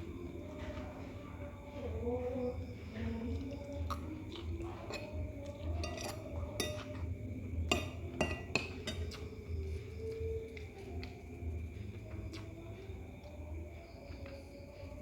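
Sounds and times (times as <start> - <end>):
metal spoon clinking on plate: 4.9 - 7.1, 7.7 - 9.3.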